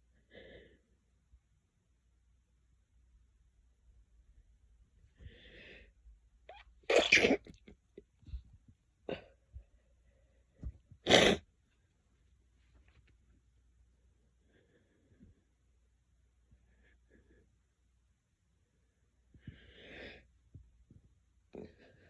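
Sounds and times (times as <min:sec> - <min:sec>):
loud sneezes: 0:06.9 - 0:07.6, 0:11.0 - 0:11.5.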